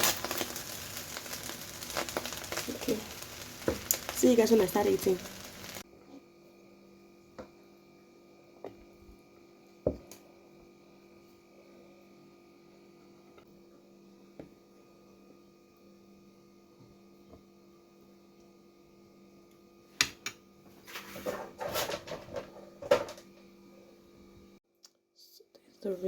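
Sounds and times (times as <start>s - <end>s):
electrical hum: 0.0s - 24.6s.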